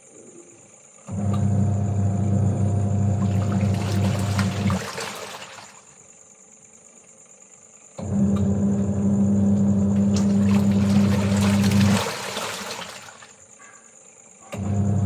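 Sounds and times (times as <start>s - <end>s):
insects droning: 0.0s - 2.0s, 3.0s - 8.2s, 9.8s - 14.6s.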